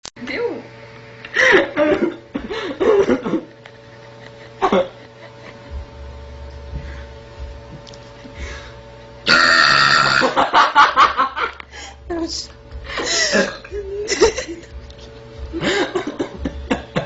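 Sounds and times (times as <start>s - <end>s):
girl belching: 9.3s - 10.4s, 13.3s - 13.7s.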